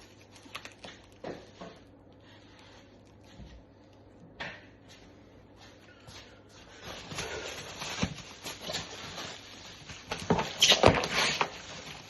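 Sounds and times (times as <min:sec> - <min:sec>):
packaging rustling and scraping: 0:06.6 - 0:12.0.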